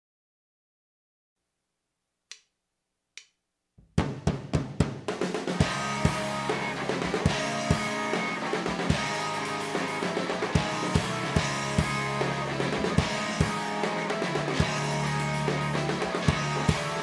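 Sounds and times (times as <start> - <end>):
snare and bass drum hits: 3.8 - 9.2
rock band playing: 5.1 - 17.0.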